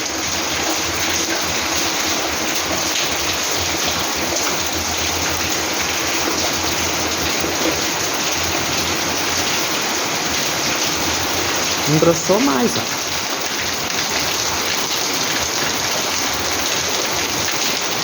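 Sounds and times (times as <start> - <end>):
heavy rain pouring: 0.0 - 18.0.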